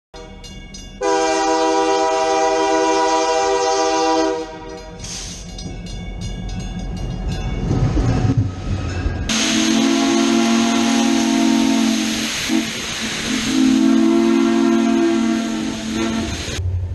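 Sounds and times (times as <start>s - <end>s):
steam locomotive whistle: 1.0s - 5.4s, 9.3s - 16.6s
steam hiss: 5.0s - 5.6s, 9.3s - 16.6s.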